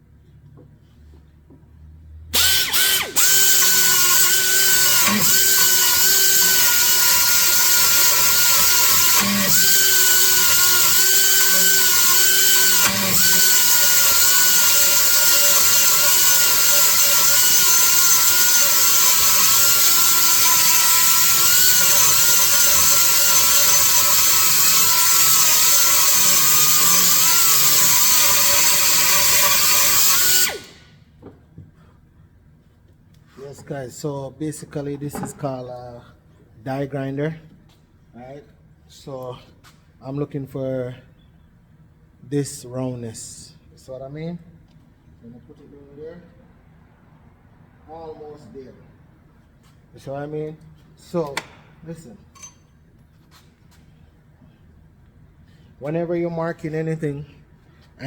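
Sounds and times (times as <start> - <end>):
die grinder whining: 2.4 - 30.8.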